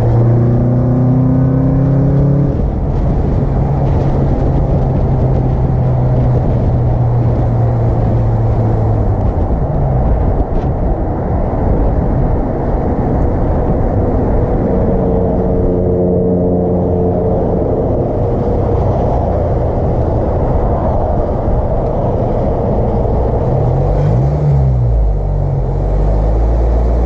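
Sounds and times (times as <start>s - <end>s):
car engine drone: 0.0s - 27.0s
road noise: 0.0s - 27.0s
higher engine note: 13.8s - 27.0s.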